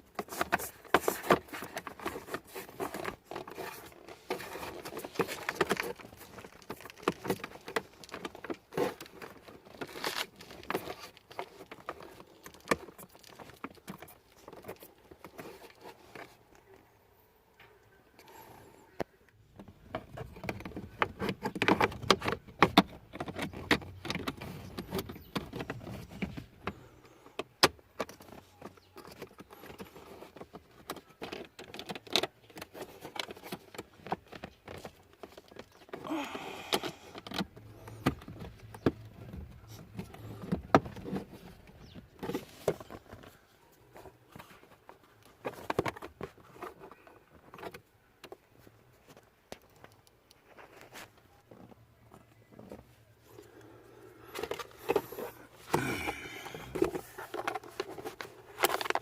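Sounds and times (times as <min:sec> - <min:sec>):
rustling and scraping: 0:00.0 - 0:59.0
plastic clicks and knocks: 0:19.0 - 0:36.0.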